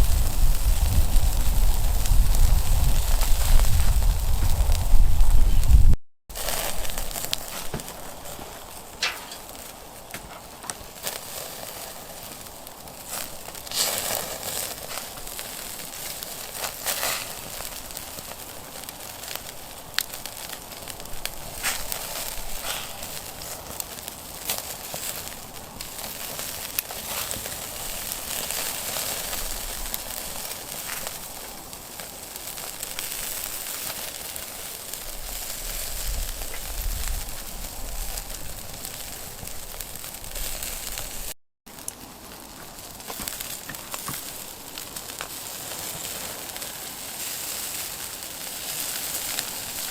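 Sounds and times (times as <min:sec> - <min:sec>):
low rumble: 0:00.0 - 0:06.0
firewood crackling and popping: 0:00.0 - 0:49.9
steady hiss: 0:00.0 - 0:49.9.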